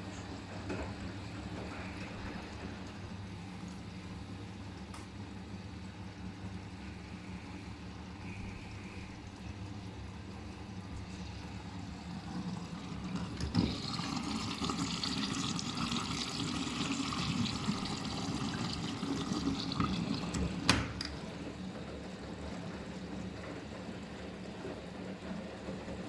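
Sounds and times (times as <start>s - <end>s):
water rushing into washing machine: 0.0s - 26.0s
washing machine click: 19.8s - 21.4s.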